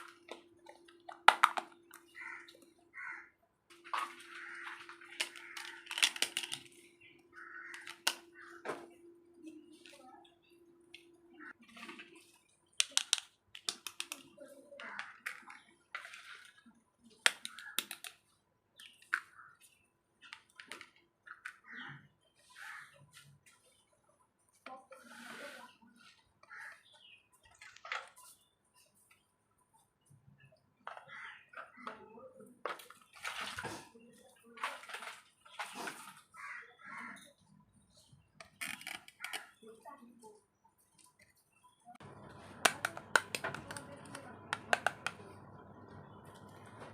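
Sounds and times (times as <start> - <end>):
water splashing: 3.7 - 6.8
toy pieces clicking and tapping: 5.2 - 6.7, 12.8 - 14.3, 17.3 - 18.2.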